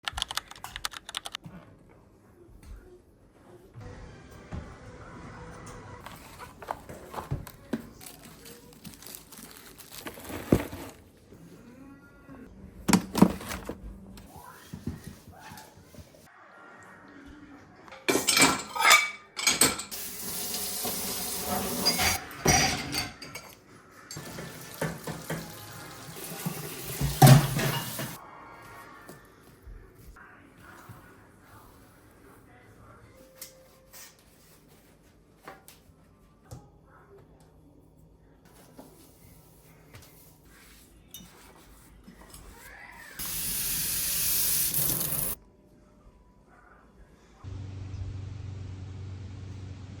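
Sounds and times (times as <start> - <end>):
dishes and cutlery clattering: 18.0 - 20.0, 21.5 - 25.6, 26.4 - 28.2
kitchen cleaning handling sounds: 18.1 - 23.5, 24.1 - 28.2
tap water running: 19.9 - 22.2, 24.2 - 28.2, 43.2 - 45.4.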